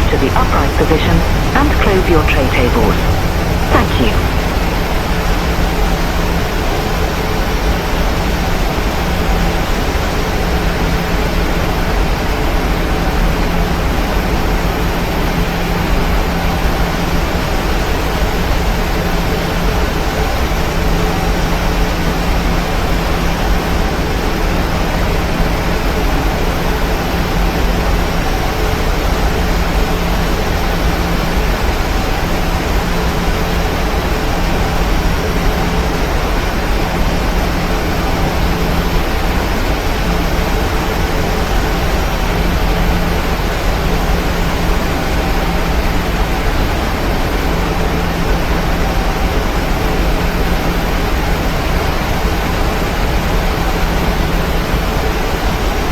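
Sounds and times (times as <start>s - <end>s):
faint steady hums: 0.0s - 4.7s.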